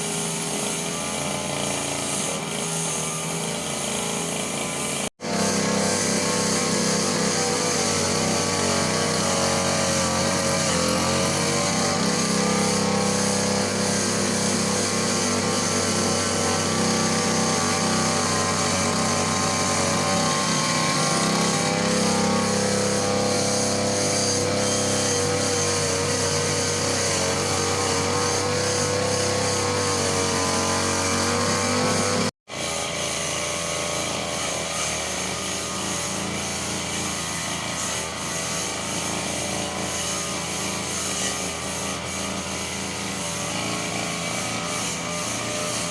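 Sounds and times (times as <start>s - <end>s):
brush cutter engine running: 0.0s - 32.3s.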